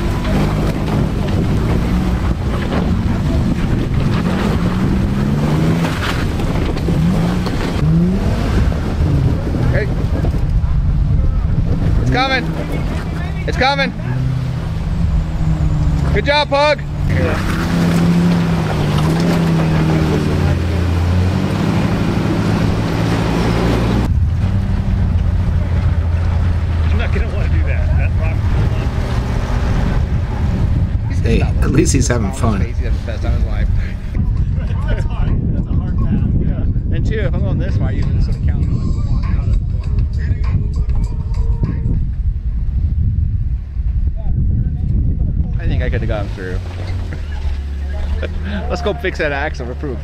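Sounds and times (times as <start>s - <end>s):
off-road engine revving: 0.0s - 35.1s, 45.4s - 50.0s
wind buffeting microphone: 0.0s - 48.5s.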